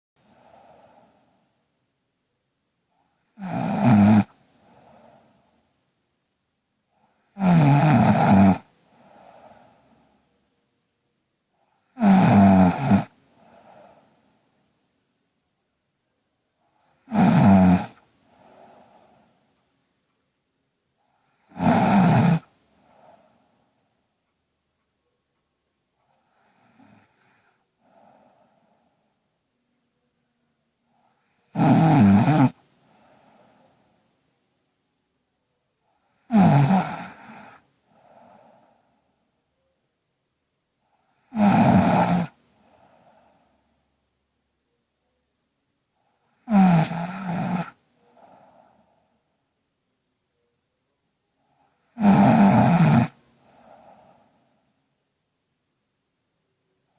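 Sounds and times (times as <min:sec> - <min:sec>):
girl snoring: 0:00.2 - 0:01.4, 0:03.0 - 0:05.4, 0:07.0 - 0:10.2, 0:11.7 - 0:14.1, 0:16.7 - 0:19.3, 0:21.0 - 0:23.6, 0:26.1 - 0:29.2, 0:30.9 - 0:33.7, 0:35.9 - 0:39.0, 0:40.9 - 0:43.6, 0:46.0 - 0:48.9, 0:51.4 - 0:54.4
quiet breath: 0:00.2 - 0:03.4, 0:04.2 - 0:07.4, 0:08.6 - 0:12.0, 0:13.0 - 0:17.1, 0:17.9 - 0:21.6, 0:22.4 - 0:31.6, 0:32.5 - 0:36.3, 0:37.0 - 0:41.3, 0:42.3 - 0:46.5, 0:47.6 - 0:52.0, 0:53.1 - 0:56.9.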